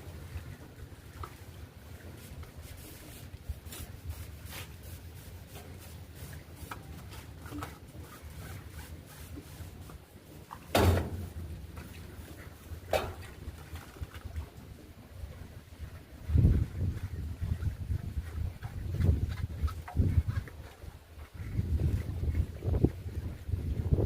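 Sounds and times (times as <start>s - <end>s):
loud short thump: 10.7s - 11.3s.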